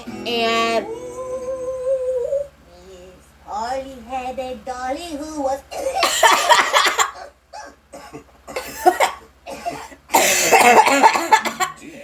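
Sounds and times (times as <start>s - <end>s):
cartoon children coughing: 5.7s - 11.8s.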